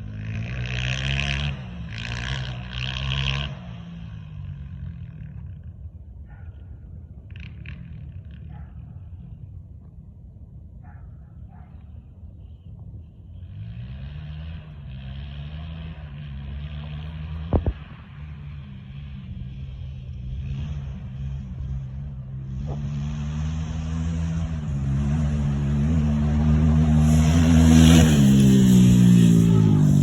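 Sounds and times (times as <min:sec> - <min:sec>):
motorcycle engine running: 0:14.0 - 0:30.0.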